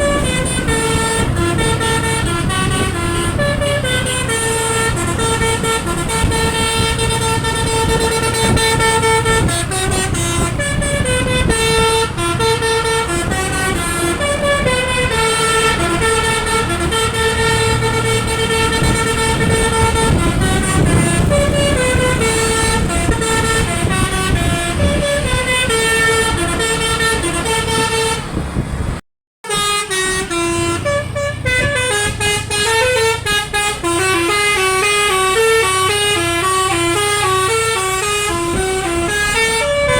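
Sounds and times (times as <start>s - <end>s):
multi-tone bus air horn melody: 0.0s - 28.6s, 29.4s - 39.9s
bus engine running: 0.0s - 39.9s.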